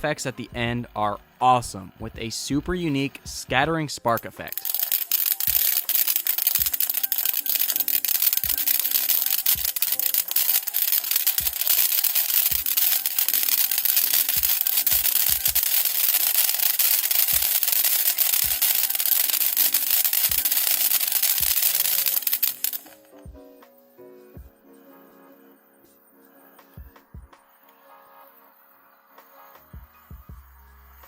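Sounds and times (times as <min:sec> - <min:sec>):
background music: 0:00.0 - 0:31.0
firework fountain hissing: 0:04.2 - 0:23.2.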